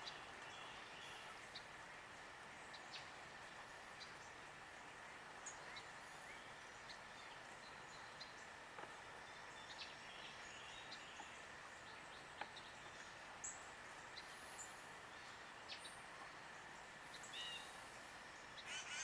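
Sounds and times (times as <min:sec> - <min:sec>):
faint hiss: 0:12.8 - 0:19.0.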